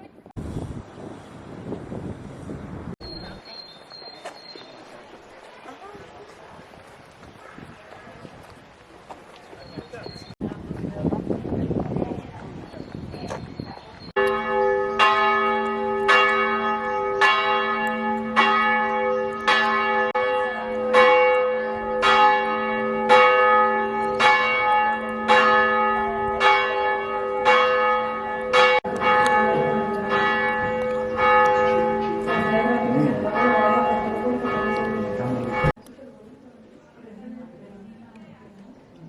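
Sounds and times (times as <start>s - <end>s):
church bell tolling: 14.1s - 35.8s.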